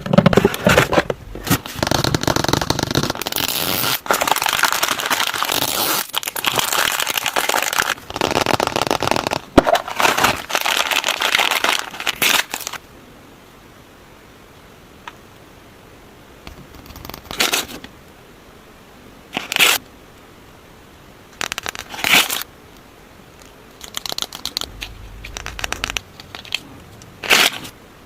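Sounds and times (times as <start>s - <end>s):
packaging crinkling and crackling: 0.1s - 12.8s, 23.8s - 26.6s
packaging tearing: 1.5s - 12.8s, 21.4s - 22.5s.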